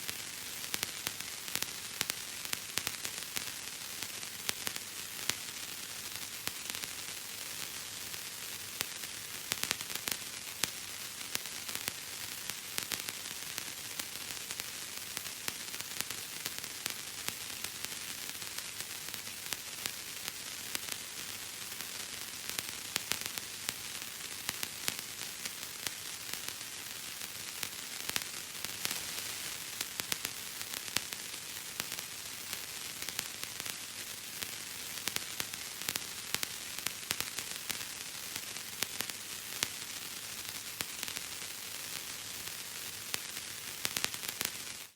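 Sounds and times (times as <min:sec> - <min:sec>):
steady hiss: 0:00.0 - 0:44.9
bubble wrap popping: 0:28.6 - 0:30.4.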